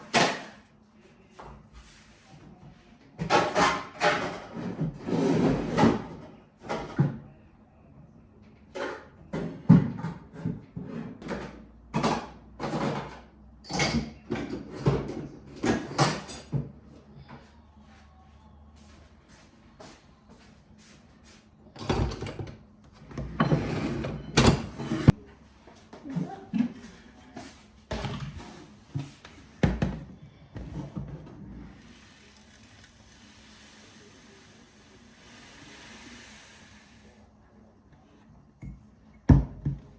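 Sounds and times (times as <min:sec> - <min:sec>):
objects knocking and clattering: 0:08.7 - 0:16.8, 0:27.9 - 0:31.4, 0:38.6 - 0:39.9
short scrapes and knocks: 0:23.2 - 0:25.2
faint steady hiss: 0:31.8 - 0:37.3.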